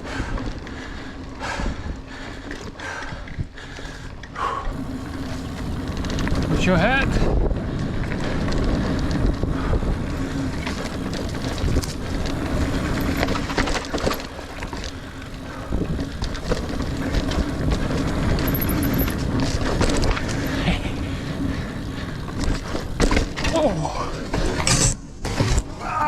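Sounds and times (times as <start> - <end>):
bike tyres on dirt: 0.0 - 26.0
bike clattering over rocks: 4.7 - 7.4, 10.4 - 25.5
wind on microphone: 4.7 - 13.5.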